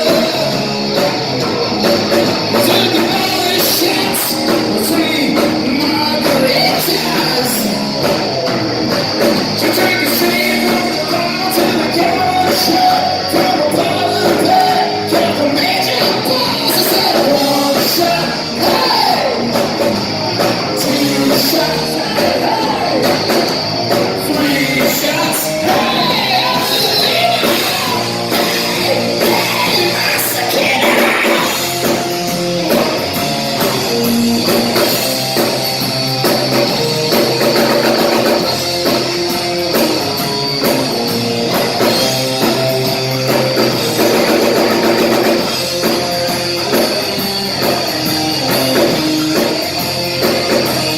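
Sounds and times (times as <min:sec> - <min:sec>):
person singing: 0:00.0 - 0:08.1, 0:09.6 - 0:35.6
drums: 0:00.0 - 0:50.9
electric guitar: 0:00.0 - 0:50.9
rock band playing live: 0:00.0 - 0:50.9.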